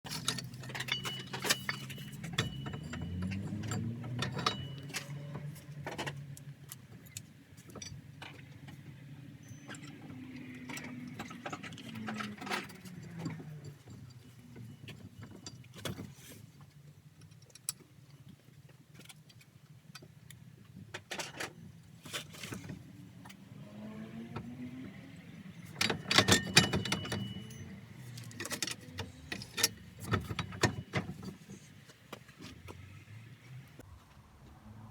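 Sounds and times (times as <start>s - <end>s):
sharp metallic clinks: 0.1s - 5.5s, 9.4s - 11.6s, 25.5s - 31.0s
vehicle engine revving: 23.5s - 25.3s.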